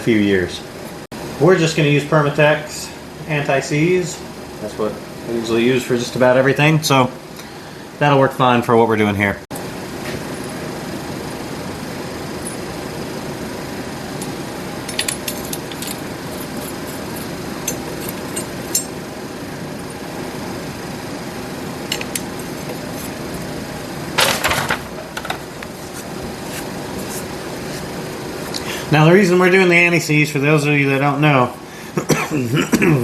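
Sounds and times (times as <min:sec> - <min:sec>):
steady background hum: 0:00.0 - 0:33.0
metal bolts and tools clinking: 0:14.8 - 0:19.0.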